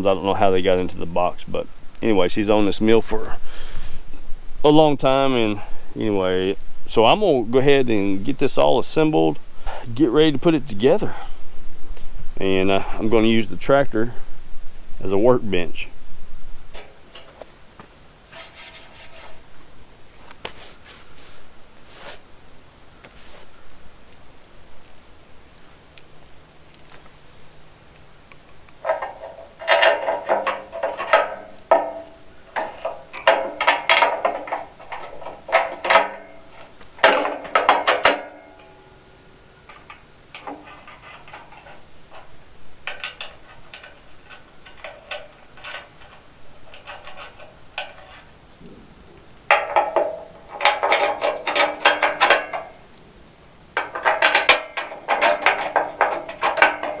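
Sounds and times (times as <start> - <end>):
ratchet wrench clicking: 25.7 - 27.0.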